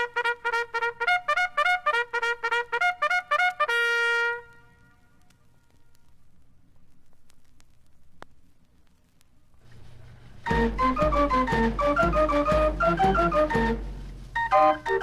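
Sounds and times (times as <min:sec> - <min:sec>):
trumpet playing short notes: 0:00.0 - 0:06.1, 0:10.4 - 0:15.0
faint background hiss: 0:00.0 - 0:15.0.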